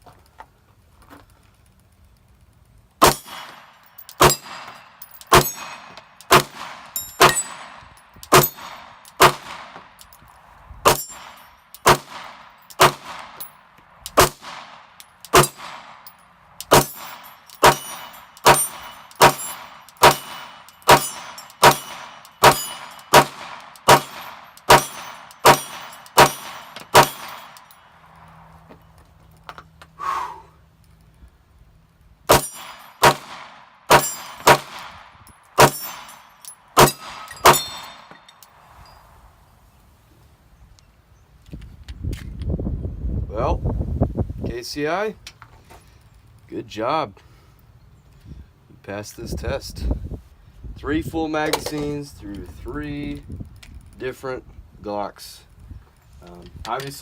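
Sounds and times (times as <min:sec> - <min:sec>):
pistol shots ringing: 0:03.0 - 0:09.8, 0:10.8 - 0:13.5, 0:14.2 - 0:27.8, 0:32.3 - 0:35.0, 0:35.6 - 0:38.3.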